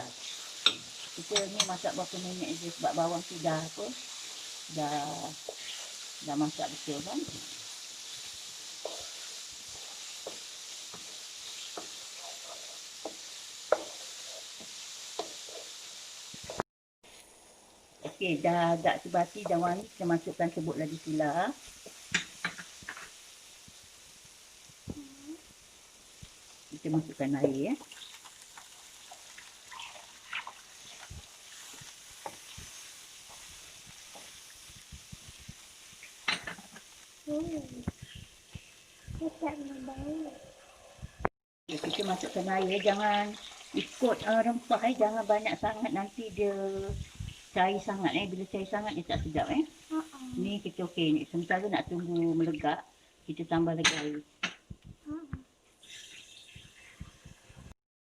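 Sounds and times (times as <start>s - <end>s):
paste sizzling in hot oil: 0.0s - 54.0s, 55.7s - 57.8s
spatula knocking and scraping pan: 0.2s - 2.3s, 8.7s - 15.7s.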